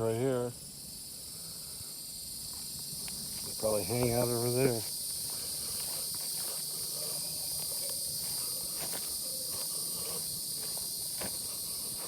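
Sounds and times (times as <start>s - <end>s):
insects chorus: 0.0s - 12.0s
soft footsteps: 2.5s - 12.0s.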